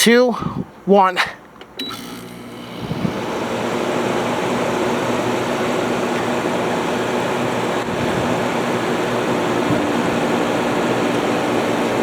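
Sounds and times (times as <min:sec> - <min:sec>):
compressor humming: 0:01.6 - 0:12.0
air conditioner fan rushing: 0:01.7 - 0:12.0.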